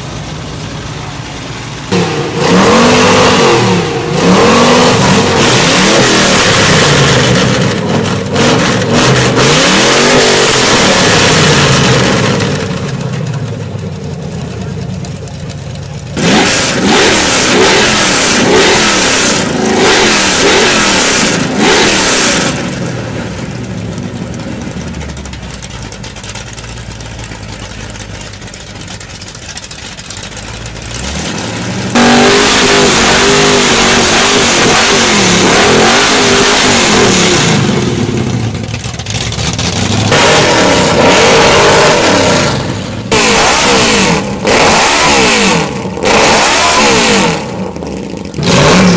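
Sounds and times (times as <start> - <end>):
cars revving and accelerating: 0.0 - 13.3, 15.5 - 26.4, 29.7 - 48.9.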